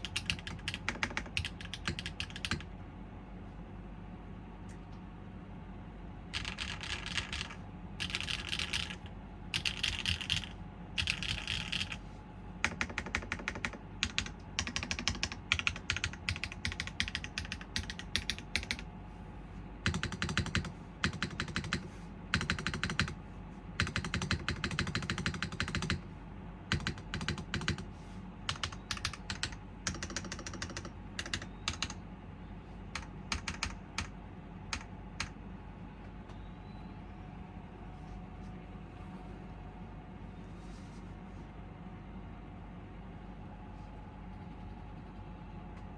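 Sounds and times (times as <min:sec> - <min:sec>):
typing on mechanical keyboard: 0:00.0 - 0:02.7, 0:06.3 - 0:12.0, 0:12.6 - 0:18.8, 0:19.8 - 0:23.2, 0:23.8 - 0:26.0, 0:26.7 - 0:27.9, 0:28.5 - 0:32.0, 0:32.9 - 0:35.3.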